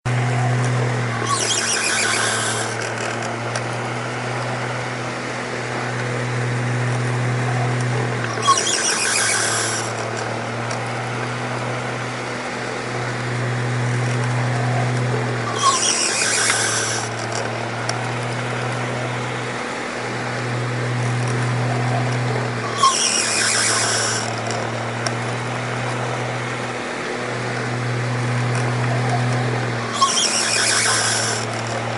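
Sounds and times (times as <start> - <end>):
fan motor hum: 0.1 - 31.9
fan squeal: 0.2 - 3.4, 7.4 - 11.8, 14.4 - 25.0, 28.6 - 31.9.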